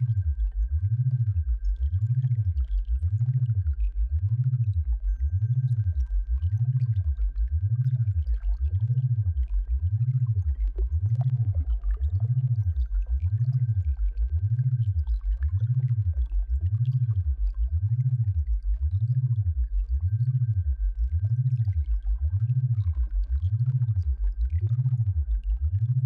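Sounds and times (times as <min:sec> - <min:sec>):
deep gliding electronic hum: 0:00.0 - 0:26.0
faint steady high tone: 0:05.1 - 0:11.6.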